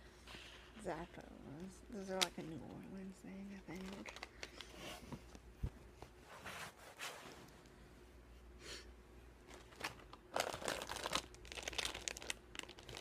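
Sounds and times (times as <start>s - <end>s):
plastic snack wrappers crinkling: 3.6s - 4.8s, 9.5s - 13.0s.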